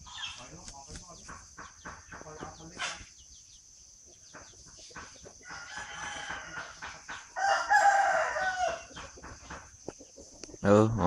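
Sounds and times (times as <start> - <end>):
faint chicken sounds: 0.0 - 11.0
rooster crowing: 5.4 - 9.0.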